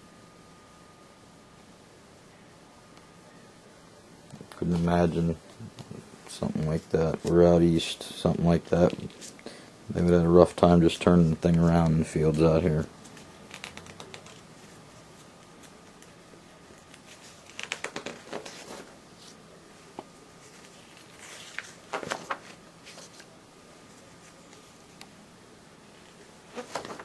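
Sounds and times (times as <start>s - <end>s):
paper pages rustling: 10.9s - 25.0s, 25.9s - 27.0s.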